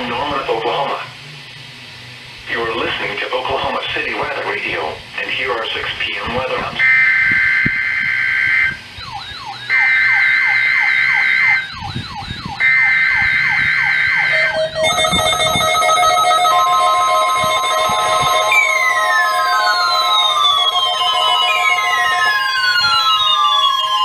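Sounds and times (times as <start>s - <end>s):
beeping alarm tones: 6.8s - 24.0s
steady warning alarm tone: 6.8s - 24.0s
warbling high tone: 6.8s - 24.0s
buzzy two-tone data bursts: 9.7s - 24.0s
falling chirps: 18.1s - 24.0s.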